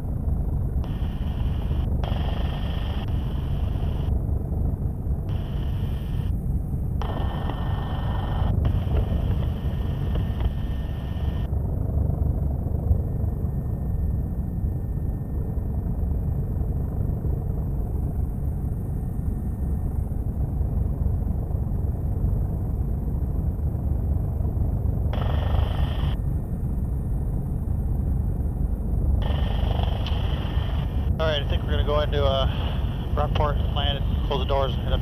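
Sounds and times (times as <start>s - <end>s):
helicopter rotor and engine drone: 0.0s - 35.0s
intercom mic hiss: 29.9s - 35.0s.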